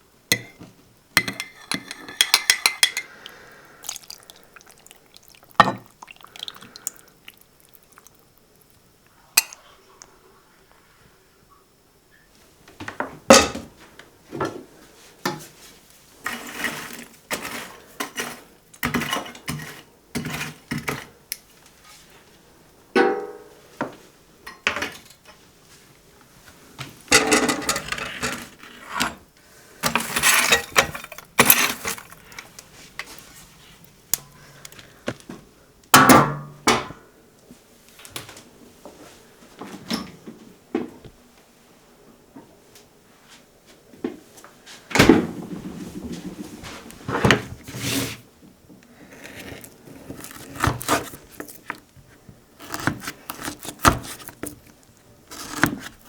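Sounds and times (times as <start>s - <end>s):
dishes and cutlery clattering: 1.2s - 3.1s, 29.9s - 32.4s.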